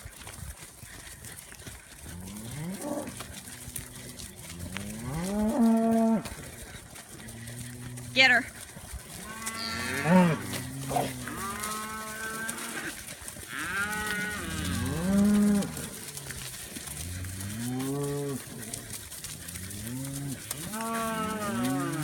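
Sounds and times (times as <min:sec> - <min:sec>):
cattle mooing: 0:02.2 - 0:06.3, 0:09.1 - 0:18.9, 0:19.5 - 0:22.0.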